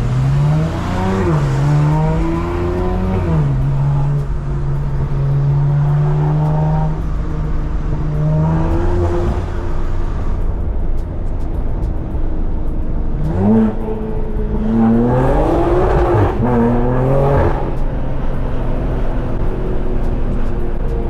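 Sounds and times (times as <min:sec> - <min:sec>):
car engine revving with gear changes: 0:00.0 - 0:21.0.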